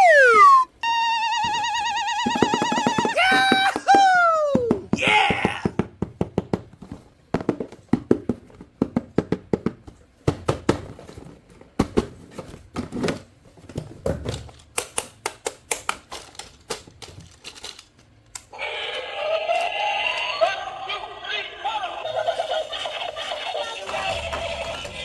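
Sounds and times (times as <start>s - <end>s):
tune with synthetic singing voice: 0.0s - 2.9s
plastic toys clicking and tapping: 0.0s - 6.6s, 14.3s - 18.5s.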